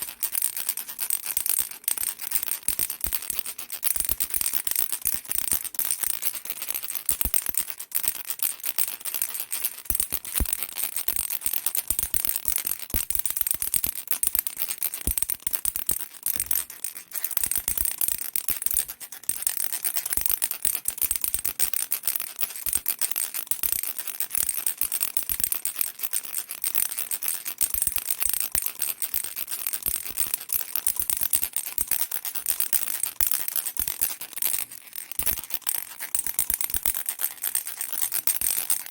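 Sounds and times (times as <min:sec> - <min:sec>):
baby rattle shaken: 0:08.9 - 0:21.6, 0:26.5 - 0:38.9.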